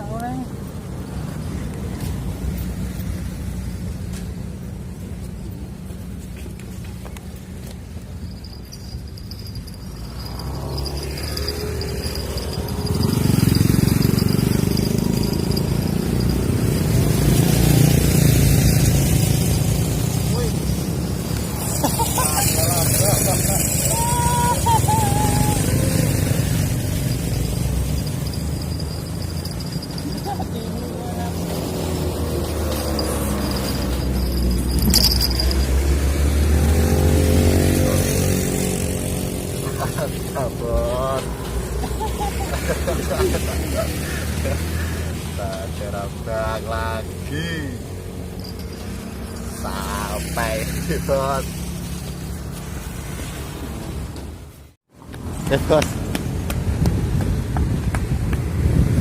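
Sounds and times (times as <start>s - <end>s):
vehicle engine rumbling past: 8.2s - 53.8s.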